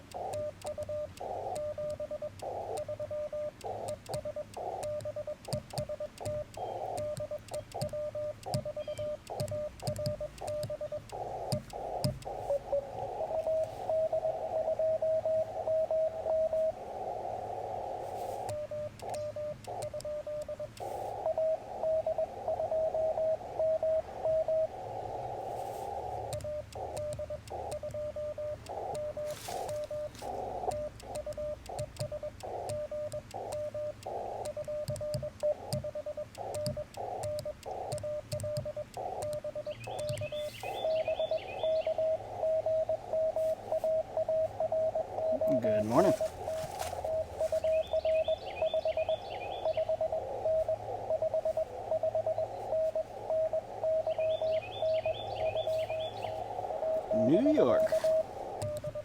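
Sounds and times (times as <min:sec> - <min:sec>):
faster morse code: 0:00.0 - 0:59.0
morse code tone: 0:00.0 - 0:59.0
static hiss: 0:00.0 - 0:59.0.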